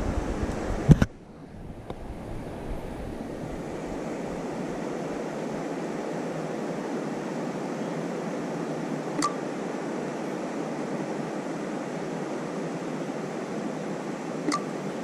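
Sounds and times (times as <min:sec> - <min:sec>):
steady rushing noise: 0:00.0 - 0:15.0
sharp click: 0:09.2 - 0:09.4, 0:14.5 - 0:14.7.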